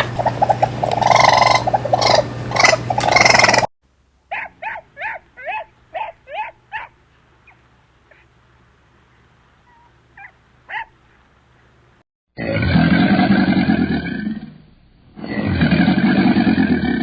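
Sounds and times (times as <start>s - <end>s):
animal squeaky calls: 0.2s - 3.7s, 4.3s - 8.3s, 9.6s - 10.9s.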